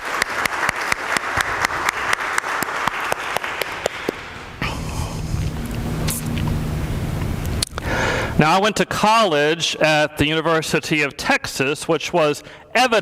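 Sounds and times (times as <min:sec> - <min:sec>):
congregation applauding: 0:00.0 - 0:04.8
steady low hum: 0:03.7 - 0:08.5.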